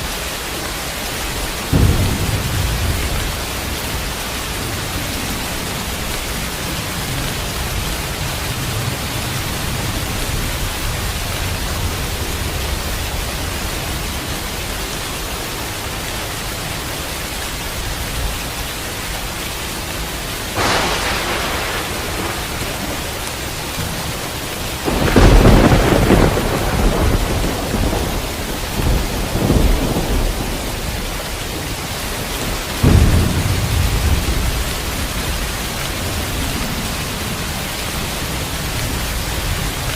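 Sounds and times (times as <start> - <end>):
steady rain: 0.0 - 39.9
thunder: 1.6 - 14.2, 20.5 - 36.9.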